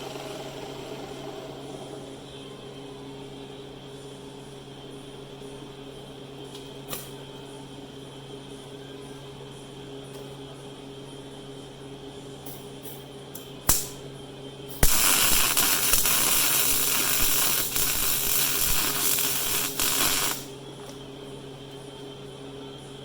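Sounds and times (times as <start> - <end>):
welding arc crackling and hissing: 14.7 - 20.5.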